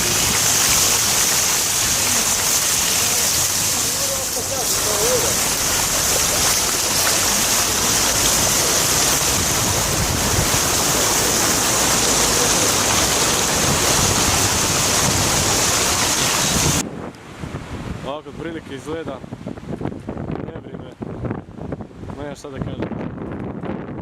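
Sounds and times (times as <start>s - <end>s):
heavy surf: 0.0s - 20.3s
storm wind: 0.0s - 24.0s
wind buffeting microphone: 5.2s - 24.0s.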